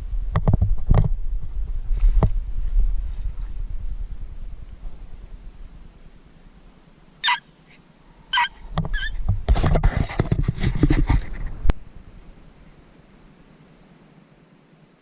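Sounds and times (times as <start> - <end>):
dog yipping: 7.2 - 9.2.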